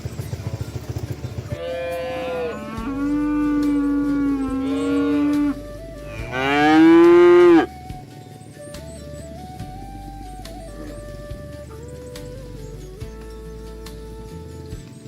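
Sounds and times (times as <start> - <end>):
cattle mooing: 1.6 - 7.8.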